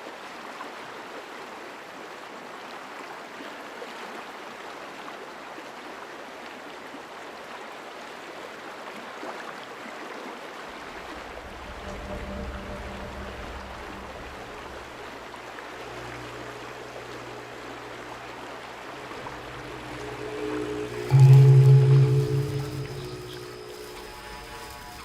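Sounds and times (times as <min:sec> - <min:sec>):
running water: 0:10.0 - 0:25.0
low hum: 0:10.7 - 0:25.0.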